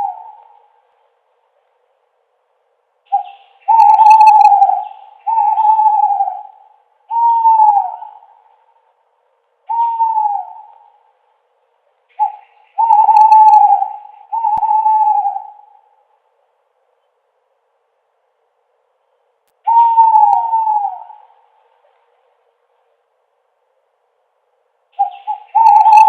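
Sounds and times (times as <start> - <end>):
owl hooting: 0.0 - 1.0, 3.1 - 9.0, 9.6 - 11.3, 12.1 - 16.2, 19.6 - 22.1, 24.9 - 26.0.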